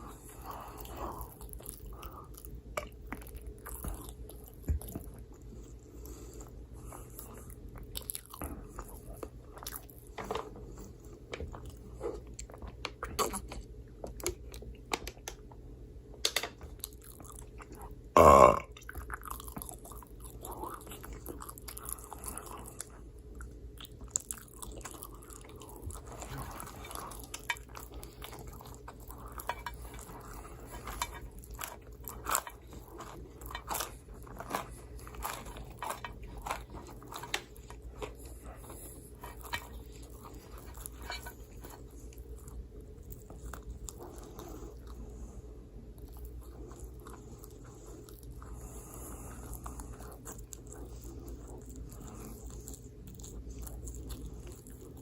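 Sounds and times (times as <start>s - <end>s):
chewing with mouth smacks: 0.0s - 15.6s, 16.5s - 55.0s
loud burp: 18.2s - 18.7s.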